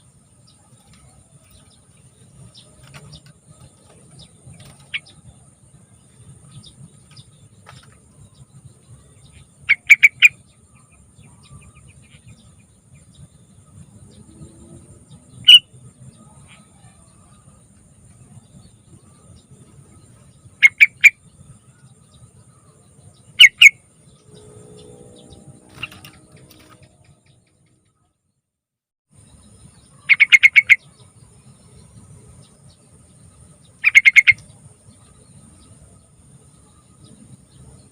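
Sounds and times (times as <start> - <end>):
bird calling in chirpy bursts: 9.7 - 10.4, 15.4 - 15.7, 20.6 - 21.2, 23.4 - 23.8, 30.0 - 30.9, 33.8 - 34.4.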